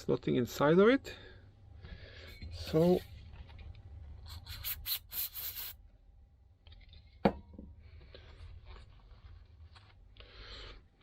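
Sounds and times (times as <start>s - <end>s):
rubbing and scraping of small parts: 2.2s - 5.8s, 7.9s - 10.8s.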